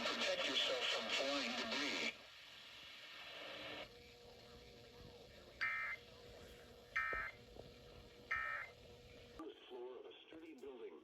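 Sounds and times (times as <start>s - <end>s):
faint radio hiss: 0.0s - 11.0s
low steady hum: 2.2s - 9.4s
electronic beeps: 5.6s - 6.0s, 7.0s - 7.4s, 8.3s - 8.7s.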